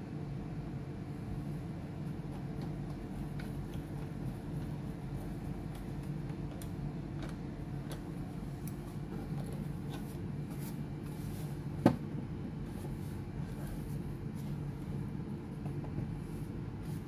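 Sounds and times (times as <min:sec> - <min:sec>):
steady low hum: 0:00.0 - 0:17.0
hands and tools clicking on laptop parts: 0:02.6 - 0:10.8.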